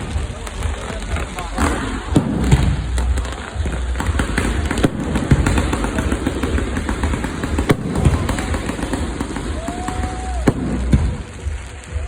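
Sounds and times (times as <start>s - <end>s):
fireworks crackling and popping: 0.0s - 12.0s
loud fireworks bangs: 0.0s - 12.0s.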